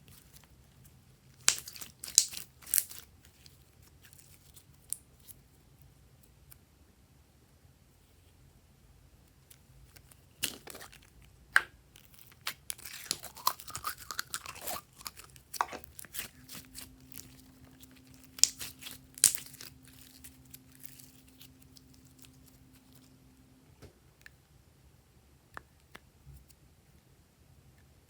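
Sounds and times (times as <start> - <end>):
slime squished by hand: 1.4 - 3.5, 11.6 - 23.1.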